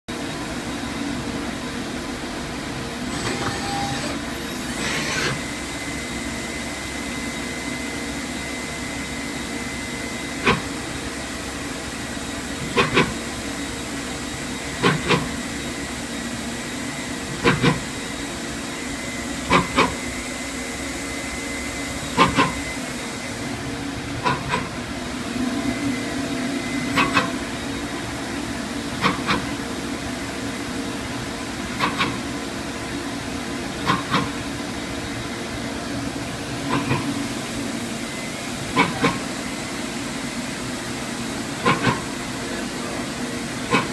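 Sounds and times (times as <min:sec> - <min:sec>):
machine humming: 0:00.1 - 0:43.9
sharp mechanical knocks: 0:22.2 - 0:22.6, 0:26.9 - 0:27.4.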